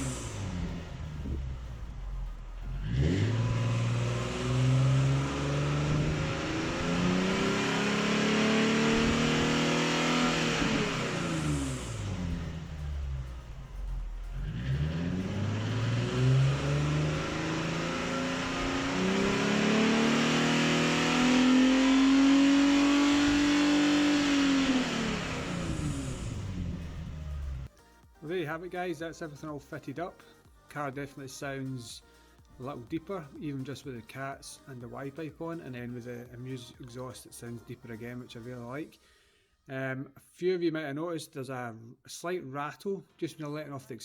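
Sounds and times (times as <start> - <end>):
car engine accelerating: 0.0 - 27.7.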